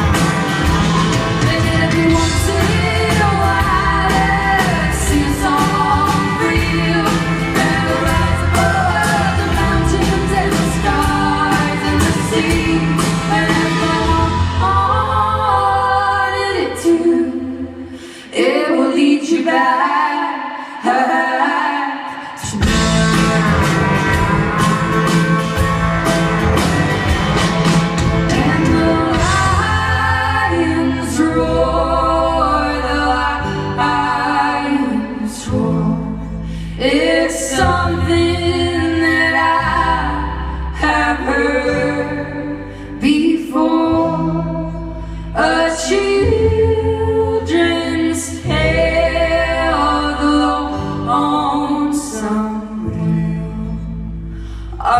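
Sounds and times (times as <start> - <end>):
strummed guitar: 0.0 - 14.8, 22.4 - 34.8
bass line: 0.0 - 16.6, 22.5 - 54.9
sung vocal harmonies: 0.0 - 54.9.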